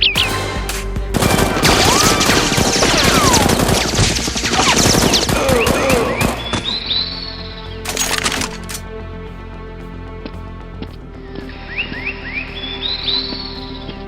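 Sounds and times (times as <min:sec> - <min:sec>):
music: 0:00.0 - 0:14.0
automatic gunfire: 0:01.2 - 0:06.6.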